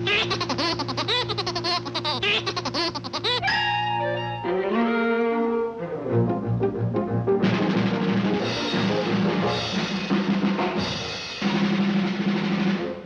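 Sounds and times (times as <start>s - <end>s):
drum beat: 7.5s - 13.0s.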